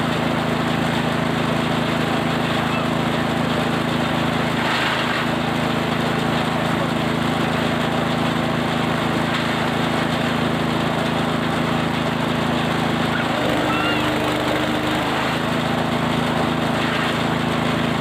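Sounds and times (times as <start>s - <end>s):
feed chopper engine running: 0.0s - 18.0s.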